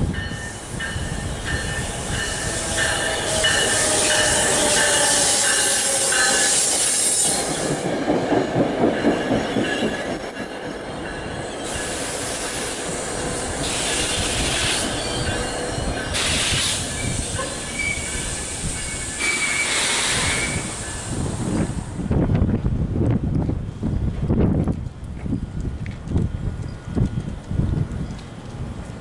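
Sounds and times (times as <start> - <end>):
train cars rolling past: 0.0 - 22.7
high wheel squeal: 2.1 - 7.7, 13.6 - 21.3
bursts of hiss: 16.2 - 17.4, 18.0 - 21.9.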